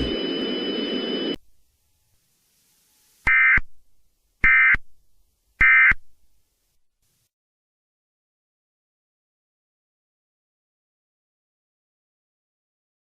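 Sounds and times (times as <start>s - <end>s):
static-laden broadcast audio: 0.0s - 1.4s.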